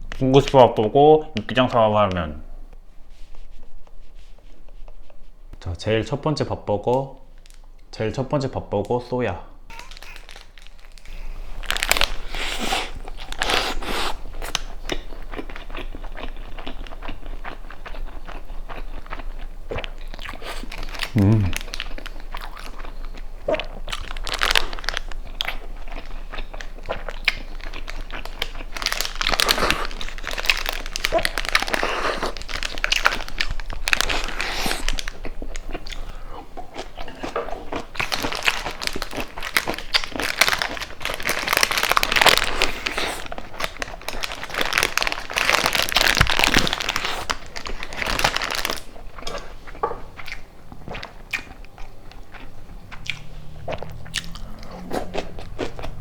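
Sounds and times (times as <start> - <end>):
food wrapper crinkling: 7.3 - 7.8, 9.7 - 18.5, 23.8 - 36.0, 37.8 - 49.5
biting and chewing: 9.7 - 56.0.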